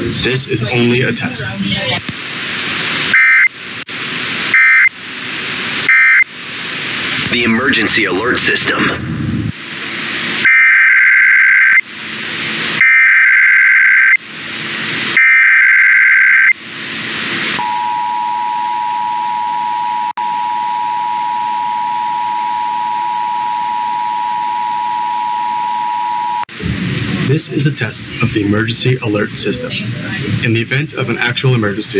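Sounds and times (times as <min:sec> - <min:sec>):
static hiss: 0:00.0 - 0:17.7, 0:26.5 - 0:31.9
warbling data burst screech: 0:15.2 - 0:16.6
two-tone attention signal: 0:17.6 - 0:26.4.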